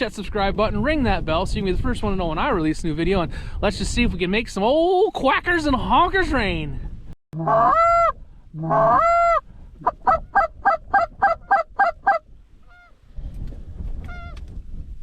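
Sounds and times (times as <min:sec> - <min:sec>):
goose clucking: 0:07.4 - 0:13.0
goose honking: 0:07.4 - 0:13.0.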